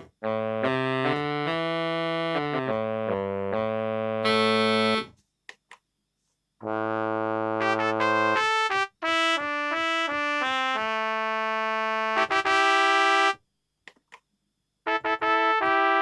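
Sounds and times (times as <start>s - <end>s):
synthesizer chords and notes: 0.0s - 5.1s.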